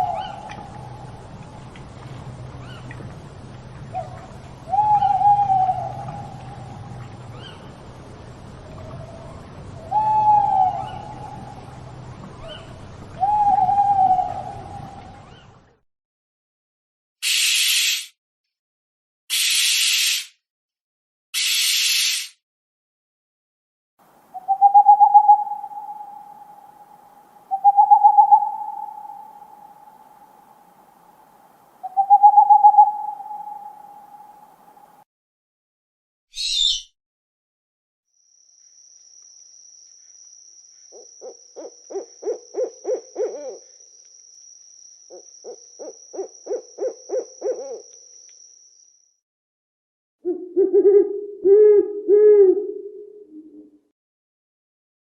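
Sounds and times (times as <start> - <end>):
owl hooting: 0.0 - 0.9, 3.9 - 6.6, 9.8 - 11.6, 12.4 - 15.4, 24.4 - 30.2, 31.8 - 34.6, 36.3 - 36.9, 40.9 - 43.8, 45.1 - 48.0, 50.2 - 53.7.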